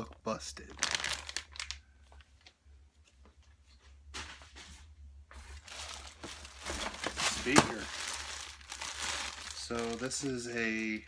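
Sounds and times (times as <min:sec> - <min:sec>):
low steady hum: 0:00.0 - 0:11.0
packaging rustling: 0:00.7 - 0:02.5, 0:05.3 - 0:11.0.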